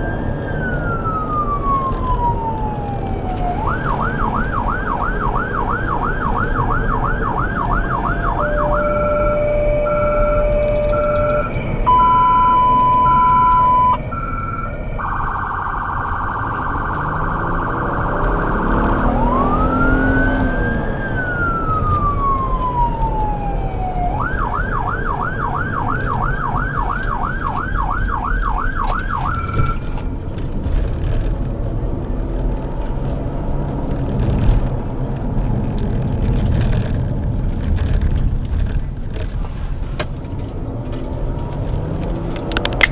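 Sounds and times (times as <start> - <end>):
emergency vehicle siren: 0.0 - 39.4
engine and road noise: 0.0 - 42.9
scattered clicks: 10.3 - 11.7, 40.0 - 42.9.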